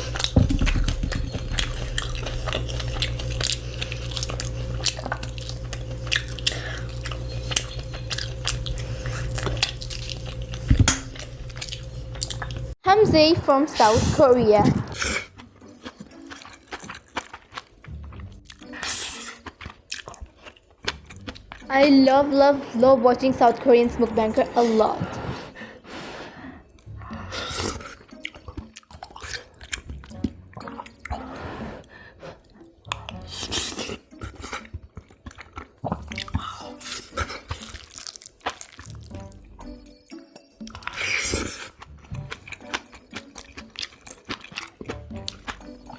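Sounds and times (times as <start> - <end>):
crunching bites and chewing: 0.0 - 12.8, 14.8 - 21.7, 26.6 - 31.4, 32.4 - 45.9
steady low hum: 0.0 - 13.1
person talking: 12.8 - 14.9, 21.7 - 25.2
crisp bites: 35.9 - 39.2.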